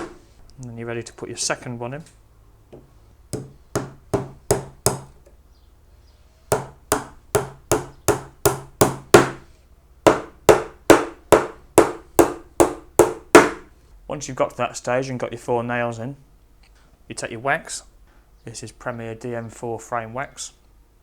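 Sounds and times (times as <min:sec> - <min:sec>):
hammer tapping pins into wood: 0:02.7 - 0:05.4, 0:06.5 - 0:09.4, 0:10.1 - 0:13.7.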